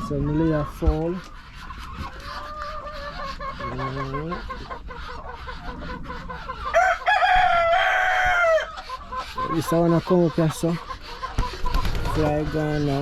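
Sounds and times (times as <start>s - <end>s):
rooster crowing: 6.7s - 8.8s.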